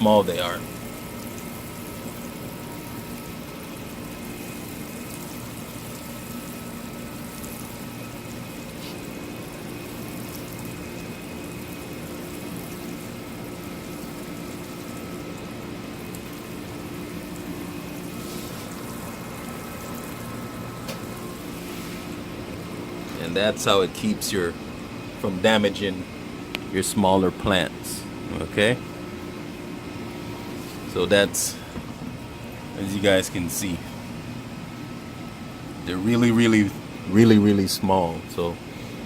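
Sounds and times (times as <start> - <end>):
water showering onto soil: 0.4 - 22.2.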